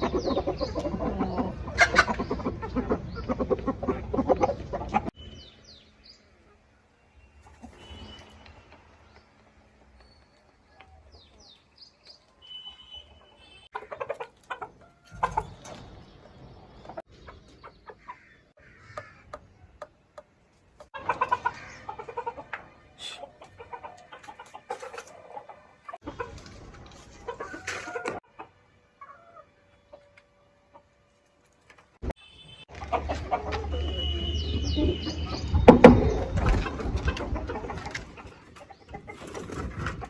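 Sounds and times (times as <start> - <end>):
chickens clucking: 0.0 - 5.2, 7.4 - 8.6, 13.1 - 31.3, 32.7 - 40.0.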